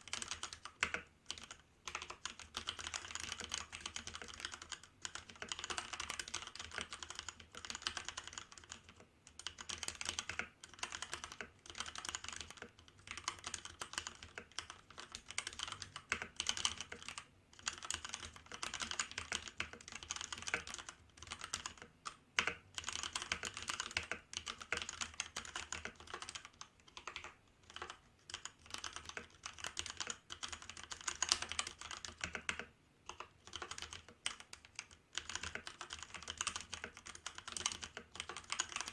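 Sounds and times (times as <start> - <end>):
mechanical keyboard typing: 0.0 - 38.9.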